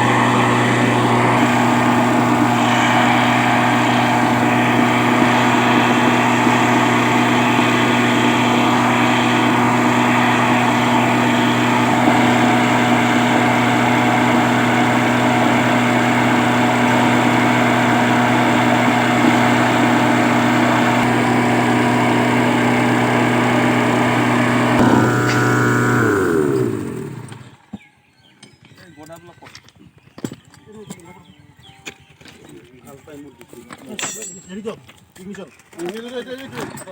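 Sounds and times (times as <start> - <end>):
small engine running: 0.0 - 27.6.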